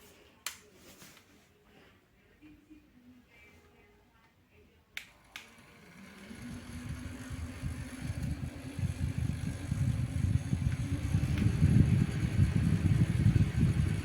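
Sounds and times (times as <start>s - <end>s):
fan motor hum: 5.0s - 14.0s
fan air buffeting microphone: 5.4s - 14.0s.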